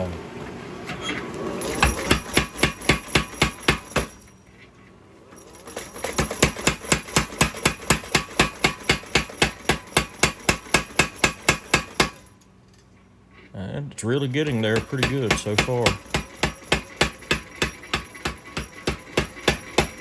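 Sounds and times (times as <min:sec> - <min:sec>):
power hammer striking hot steel: 0:01.6 - 0:04.2, 0:05.8 - 0:12.3, 0:14.4 - 0:20.0.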